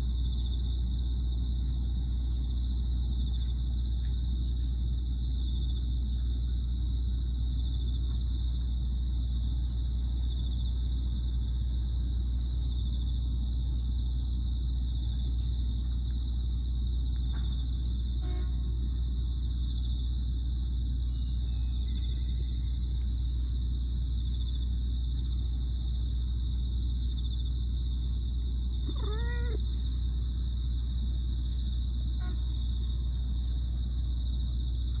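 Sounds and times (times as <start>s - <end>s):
cat meowing: 28.8s - 29.6s.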